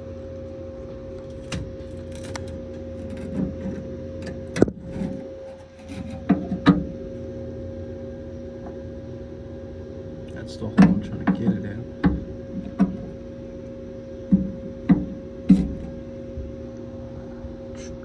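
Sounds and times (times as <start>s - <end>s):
steady mechanical hum: 0.0s - 18.0s.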